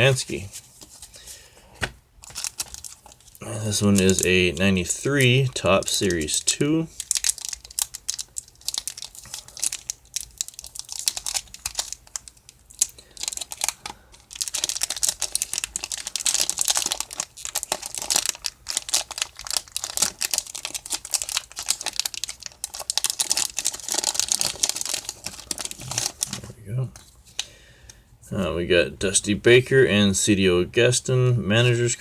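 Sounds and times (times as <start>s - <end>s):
wrapper crinkling and tearing: 2.2s - 4.6s, 5.2s - 26.5s.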